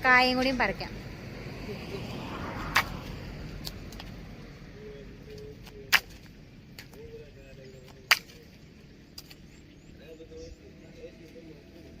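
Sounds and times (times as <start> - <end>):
plant stems snapping: 7.9 - 8.4.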